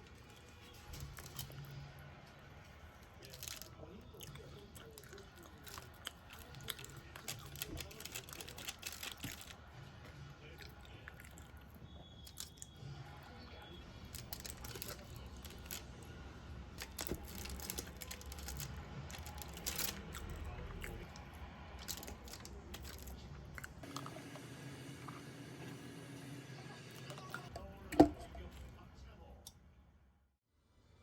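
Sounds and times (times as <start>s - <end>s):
chewing crunchy food: 2.8s - 16.0s, 16.8s - 24.4s.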